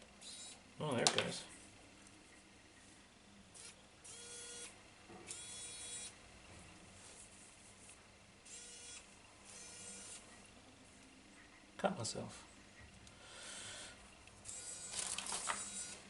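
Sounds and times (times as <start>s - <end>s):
electric screwdriver motor whirring: 3.6s - 4.7s, 5.3s - 6.1s, 8.5s - 10.2s, 14.5s - 16.0s.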